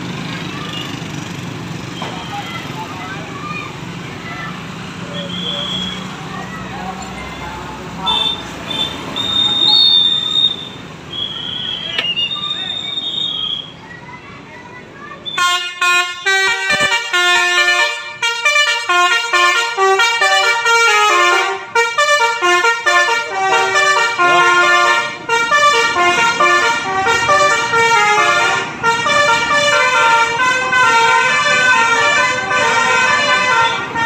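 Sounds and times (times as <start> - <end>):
bus passing: 0.0 - 34.0
multi-tone bus air horn melody: 15.3 - 34.0.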